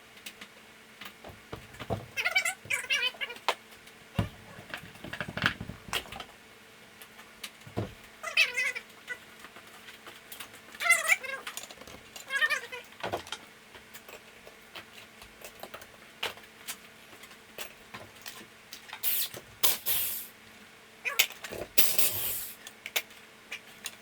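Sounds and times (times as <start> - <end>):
cat hissing: 19.0 - 20.3, 22.0 - 22.6.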